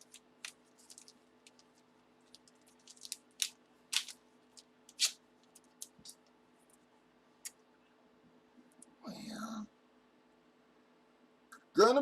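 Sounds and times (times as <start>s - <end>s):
plastic packaging crinkling: 0.0s - 6.3s.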